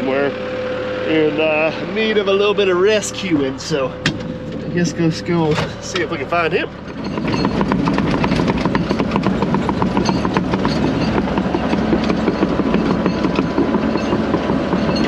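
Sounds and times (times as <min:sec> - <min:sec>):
diesel engine running: 0:00.0 - 0:15.0
rhythmic clatter: 0:02.5 - 0:15.0.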